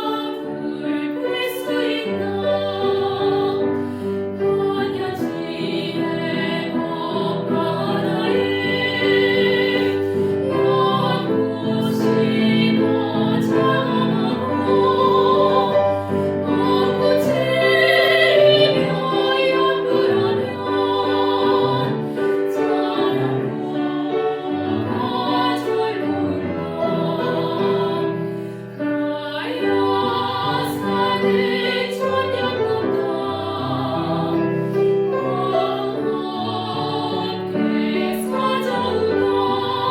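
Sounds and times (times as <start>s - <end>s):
person singing hymn with vibrato: 0.0s - 28.5s, 29.1s - 39.9s
piano accompaniment: 0.0s - 39.9s.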